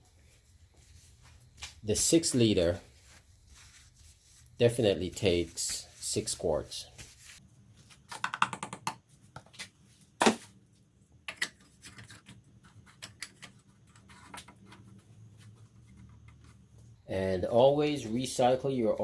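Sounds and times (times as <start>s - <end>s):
clicks and taps of objects handled: 8.1s - 9.7s, 11.2s - 14.9s.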